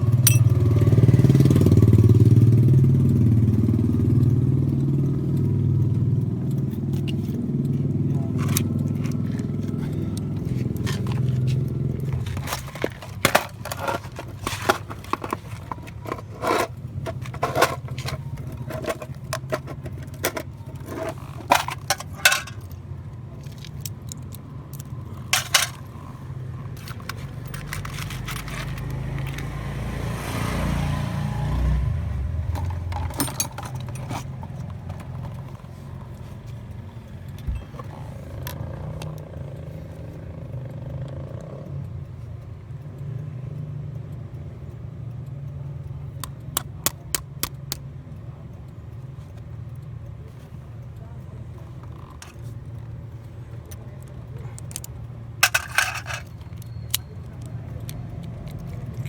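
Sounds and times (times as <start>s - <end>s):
passing vehicle: 0.0s - 59.0s
keys and metal parts clinking: 0.1s - 0.6s, 4.8s - 29.5s, 32.4s - 39.2s, 51.8s - 59.0s.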